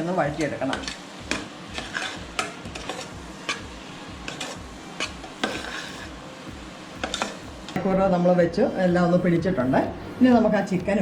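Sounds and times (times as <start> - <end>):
low sizzle: 0.0 - 11.0
utensil scraping metal pot: 0.7 - 3.6, 4.3 - 6.2.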